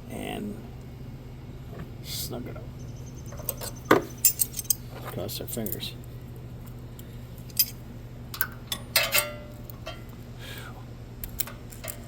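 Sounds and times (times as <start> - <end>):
steady low hum: 0.0 - 12.0
metal hand tools clinking: 3.5 - 4.8.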